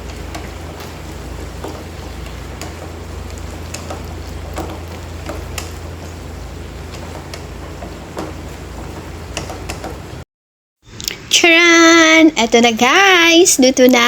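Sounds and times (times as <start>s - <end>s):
spatula stirring food in a pan: 0.0s - 10.2s
steady low hum: 0.0s - 10.2s.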